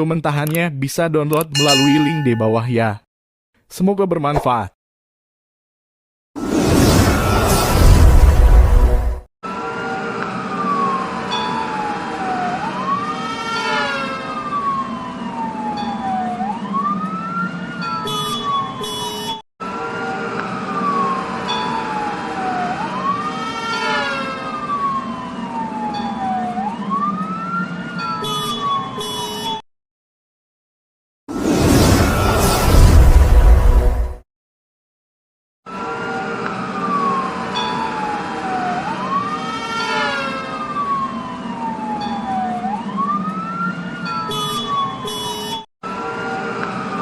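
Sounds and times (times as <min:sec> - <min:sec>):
police siren wailing: 0:09.4 - 0:29.6, 0:35.7 - 0:47.0.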